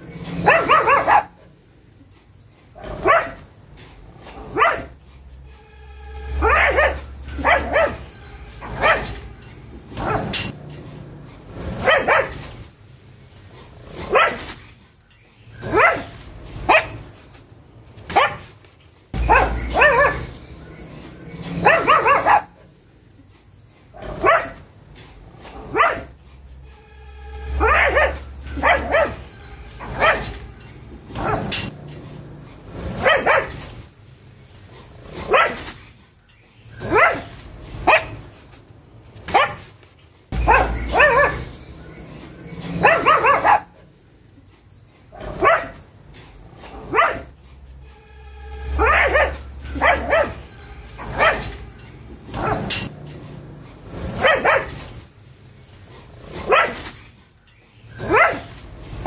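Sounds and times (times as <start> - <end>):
dog barking: 0.3 - 1.5, 2.8 - 3.5, 4.3 - 5.0, 6.3 - 9.2, 9.9 - 10.5, 11.7 - 12.4, 14.0 - 14.5, 15.6 - 17.1, 18.1 - 18.5, 19.2 - 20.4, 21.5 - 22.6, 24.0 - 24.7, 25.5 - 26.2, 27.5 - 30.4, 31.1 - 31.7, 32.9 - 33.6, 35.2 - 35.7, 36.8 - 38.2, 39.3 - 39.7, 40.4 - 41.9, 42.7 - 43.8, 45.2 - 45.8, 46.7 - 47.3, 48.7 - 51.6, 52.3 - 52.9, 54.1 - 54.8, 56.4 - 56.9, 58.0 - 58.6.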